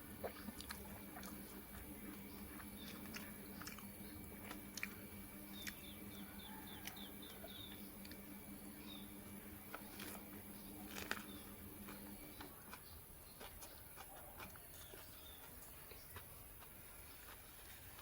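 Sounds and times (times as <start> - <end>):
chewing: 0.0 - 18.0
low steady hum: 0.0 - 18.0
wet clicks and lip smacks: 0.2 - 5.9.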